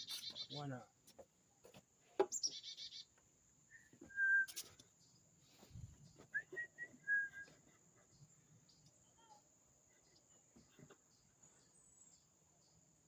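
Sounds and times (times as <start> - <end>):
birds chattering: 0.0 - 1.3, 2.0 - 12.9
bird whistled notes: 3.7 - 4.8, 6.2 - 7.7.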